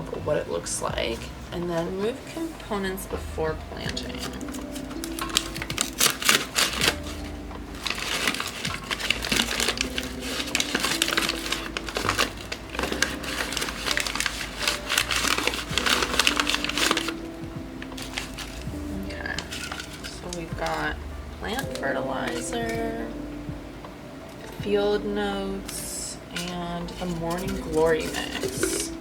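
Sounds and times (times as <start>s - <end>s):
soft background music: 0.0s - 29.0s
small hard items clattering: 3.8s - 22.9s, 25.7s - 29.0s.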